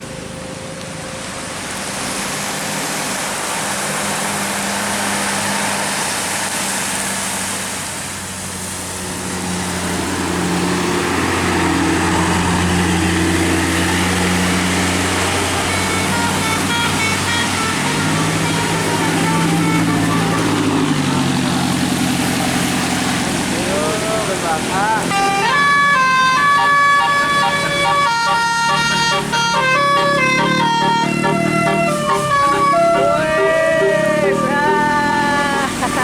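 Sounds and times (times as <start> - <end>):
low diesel engine hum: 0.0 - 36.0
road and traffic noise: 0.0 - 36.0
musical bus horn notes: 11.2 - 21.7, 24.2 - 36.0.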